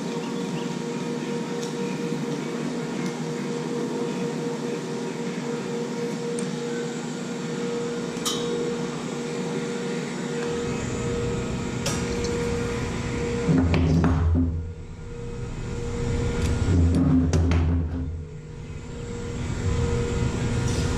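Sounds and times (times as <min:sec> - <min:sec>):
welding arc hiss and hum: 0:00.0 - 0:20.9
low rumble: 0:10.6 - 0:20.9.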